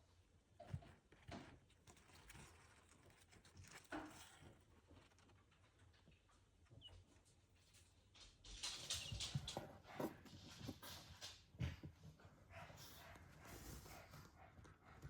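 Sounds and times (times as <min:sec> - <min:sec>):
chicks rustling in bedding: 0:00.7 - 0:14.7.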